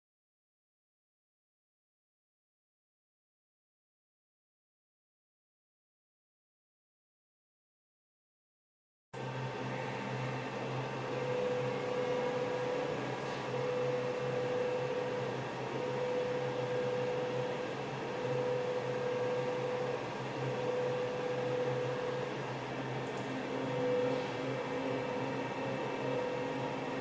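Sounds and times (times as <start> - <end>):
machine fan hum and hiss: 9.2 - 27.0
mid-pitched machine tone: 9.2 - 27.0.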